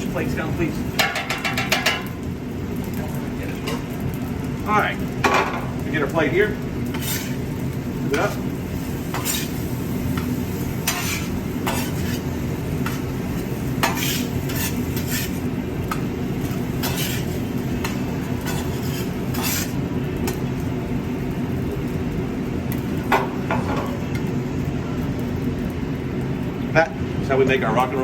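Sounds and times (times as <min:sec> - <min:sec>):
food sizzling: 0:00.0 - 0:28.0
metal spatulas scraping on grill: 0:06.8 - 0:07.5, 0:08.1 - 0:09.6, 0:10.2 - 0:19.8.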